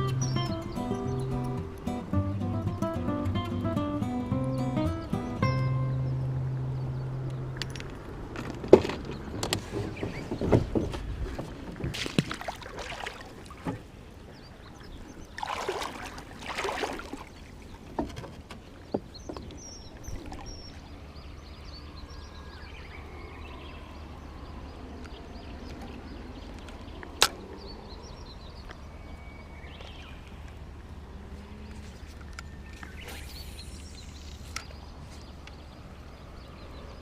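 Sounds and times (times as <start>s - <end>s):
low rumble: 0.0s - 9.4s
water sloshing around a boat: 6.1s - 37.0s.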